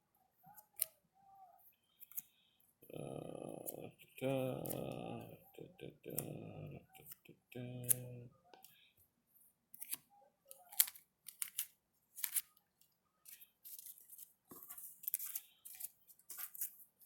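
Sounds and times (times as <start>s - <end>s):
cards scraping and rustling: 9.7s - 17.0s.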